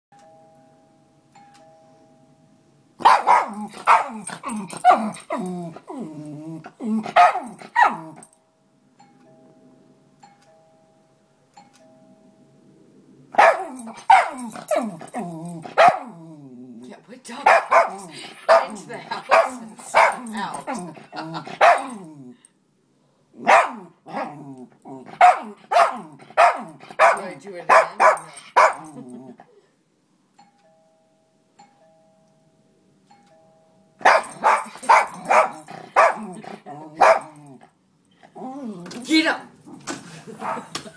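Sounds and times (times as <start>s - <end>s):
faint two-tone doorbell chime: 0.2s - 2.8s, 8.4s - 12.7s, 30.4s - 34.0s
dog barking: 3.0s - 5.2s, 7.1s - 8.2s, 13.4s - 14.9s, 15.7s - 16.2s, 17.4s - 20.9s, 21.6s - 22.0s, 23.4s - 24.4s, 25.1s - 29.0s, 34.0s - 37.4s, 40.4s - 40.7s.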